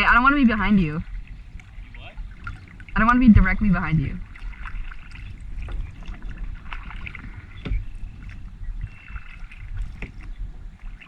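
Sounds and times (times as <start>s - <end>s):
low rumble: 0.0s - 11.0s
paddle strokes: 0.0s - 11.0s
water sloshing: 0.0s - 11.0s.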